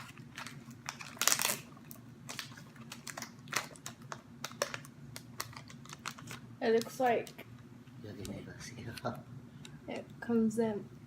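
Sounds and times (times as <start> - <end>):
plastic packaging rustling: 0.0 - 7.0
small clicks and crinkles: 0.3 - 7.6.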